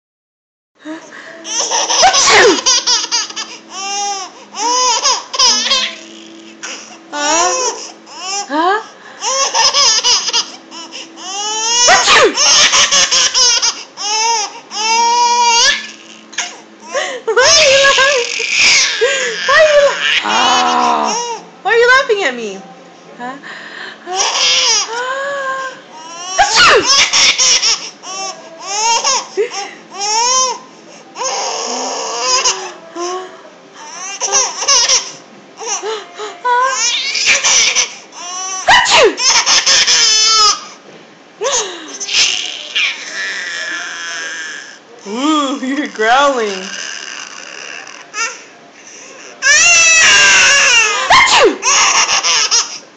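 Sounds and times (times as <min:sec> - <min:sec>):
baby laughing in squeals: 0:01.4 - 0:08.5, 0:09.2 - 0:21.4, 0:24.1 - 0:25.0, 0:26.0 - 0:30.6, 0:34.0 - 0:35.9, 0:36.6 - 0:40.8, 0:41.4 - 0:44.7, 0:49.4 - 0:52.8.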